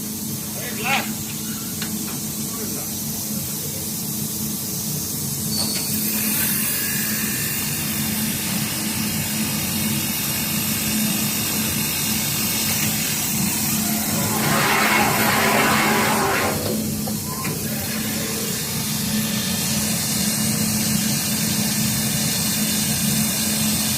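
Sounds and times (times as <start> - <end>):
quilting machine humming: 12.9 - 19.5.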